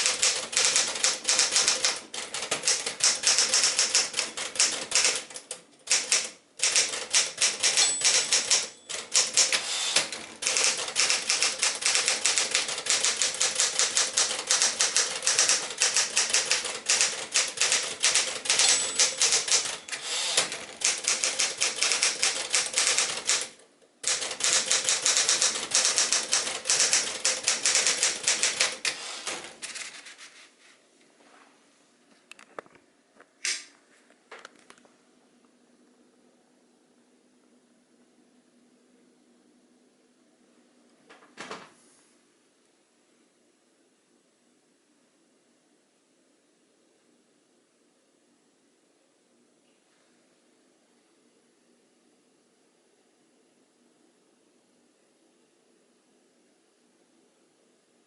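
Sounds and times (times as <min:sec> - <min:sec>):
typewriter keystrokes clacking: 0:00.0 - 0:29.9
typewriter bell ring: 0:05.9 - 0:09.6, 0:10.4 - 0:23.5, 0:24.1 - 0:28.8.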